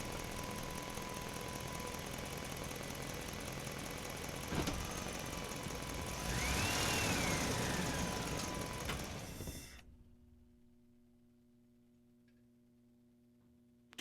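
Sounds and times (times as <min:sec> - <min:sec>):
truck engine rumbling: 0:00.0 - 0:10.4.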